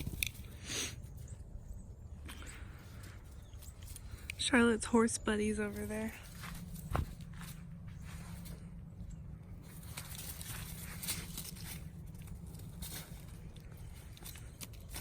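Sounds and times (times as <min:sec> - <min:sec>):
footsteps scuffing outdoors: 0:05.2 - 0:15.0.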